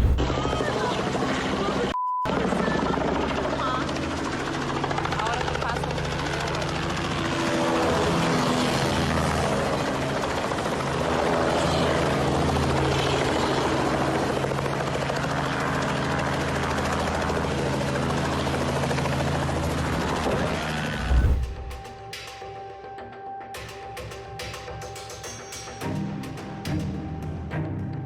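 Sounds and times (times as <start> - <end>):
loud low thud: 0.0 - 0.5, 21.0 - 21.9
helicopter rotor and engine drone: 0.0 - 28.0.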